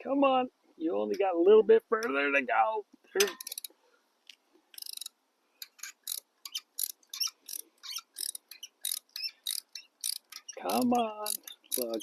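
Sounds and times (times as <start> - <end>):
ratchet wrench clicking: 3.4 - 3.7, 4.8 - 12.0.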